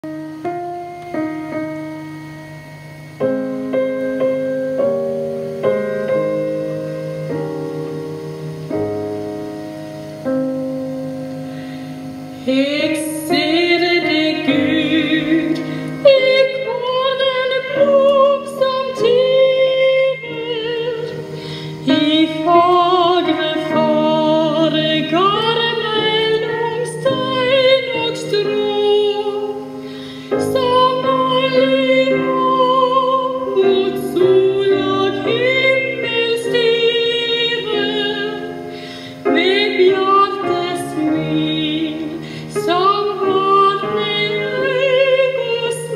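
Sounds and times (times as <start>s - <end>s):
solo piano chords: 0.0s - 45.9s
woman singing with vibrato: 11.8s - 45.9s.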